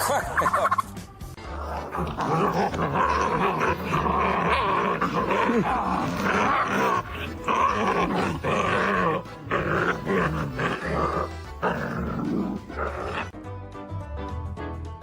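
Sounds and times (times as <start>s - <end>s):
dog growling and groaning: 1.4s - 13.4s.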